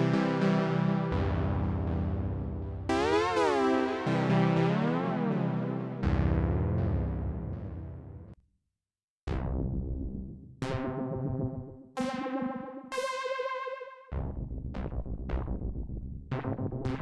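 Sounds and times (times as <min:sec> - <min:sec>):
plucky synthesizer notes: 0:00.0 - 0:08.3, 0:10.6 - 0:14.4
repeated low synthesizer notes: 0:00.0 - 0:08.4, 0:09.3 - 0:17.0.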